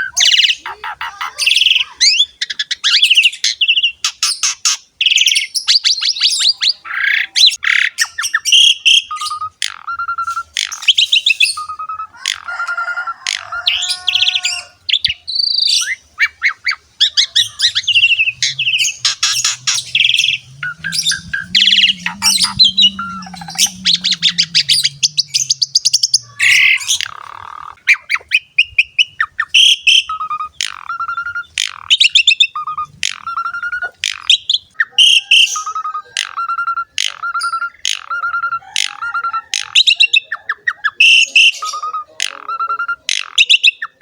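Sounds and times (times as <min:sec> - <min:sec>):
starling singing: 0:00.0 - 0:44.0
faint low hum: 0:17.3 - 0:27.8.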